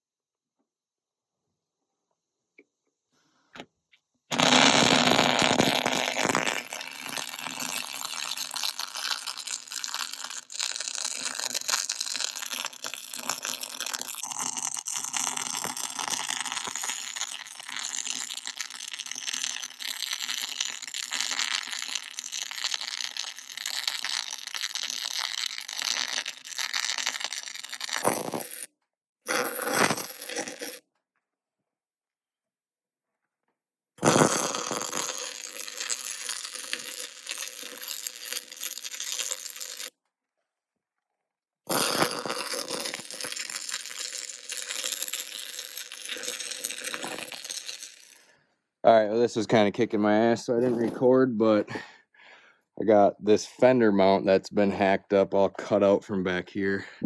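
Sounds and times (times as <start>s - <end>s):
welding arc crackling: 4.3s - 28.6s.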